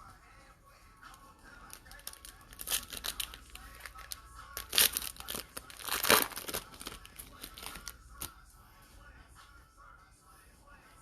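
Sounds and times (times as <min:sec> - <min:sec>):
background music: 0:00.0 - 0:11.0
card pack wrapper tearing and crinkling: 0:01.7 - 0:08.0.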